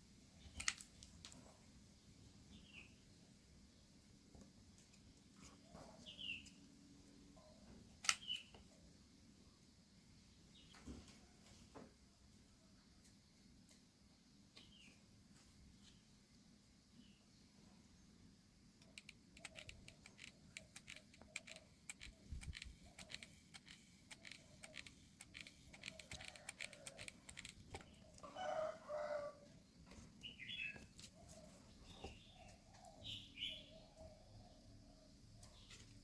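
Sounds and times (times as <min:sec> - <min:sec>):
clicks and taps handling small parts: 0:18.8 - 0:28.0
bird calls: 0:18.9 - 0:29.1, 0:29.8 - 0:35.9.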